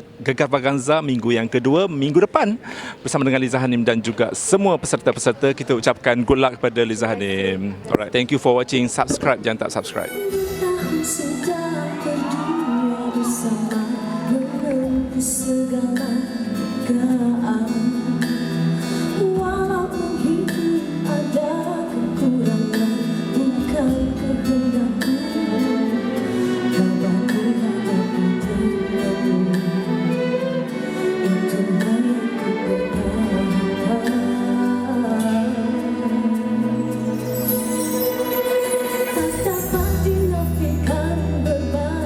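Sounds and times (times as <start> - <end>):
instrumental backing: 9.9 - 42.0
person singing: 9.9 - 42.0.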